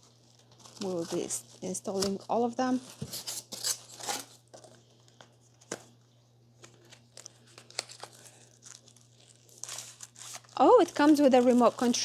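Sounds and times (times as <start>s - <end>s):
plastic wrap crinkling: 0.0s - 5.9s, 6.6s - 12.0s.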